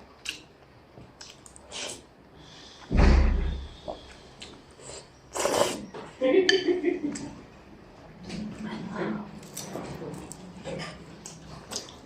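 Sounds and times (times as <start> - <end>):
heavy thump: 2.9 - 3.8.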